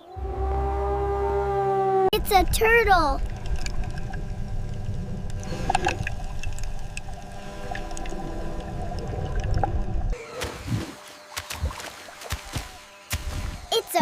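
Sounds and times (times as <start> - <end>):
low rumble: 2.1 - 10.2
gurgling water-like noise: 2.4 - 10.2.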